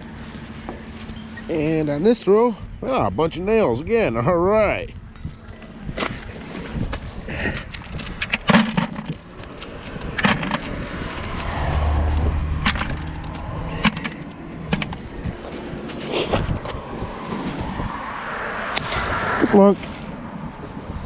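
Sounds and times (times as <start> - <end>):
low rumble: 9.9 - 21.0.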